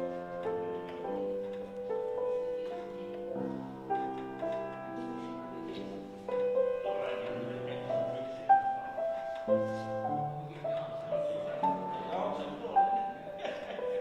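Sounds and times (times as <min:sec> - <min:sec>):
slow keyboard music: 0:00.0 - 0:14.0.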